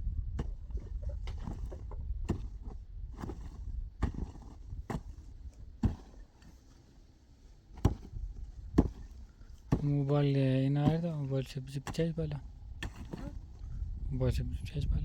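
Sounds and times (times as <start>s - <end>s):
hand tool striking: 9.7s - 10.0s, 10.8s - 12.1s, 12.8s - 13.4s.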